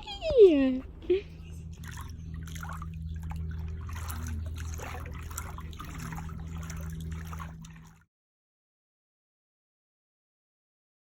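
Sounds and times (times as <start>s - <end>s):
steady low engine hum: 0.0s - 8.0s
water trickling and splashing: 1.4s - 8.1s.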